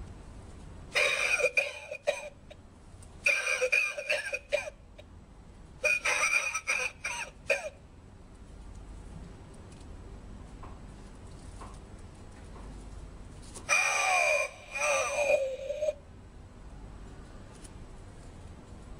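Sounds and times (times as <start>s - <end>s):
recorded coughing: 1.0s - 2.6s, 3.2s - 5.1s, 5.8s - 7.8s, 13.7s - 16.0s.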